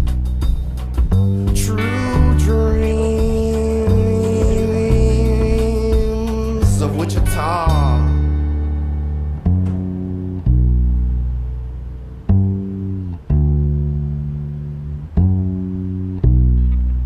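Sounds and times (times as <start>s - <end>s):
plucked upright bass notes: 0.0s - 17.0s.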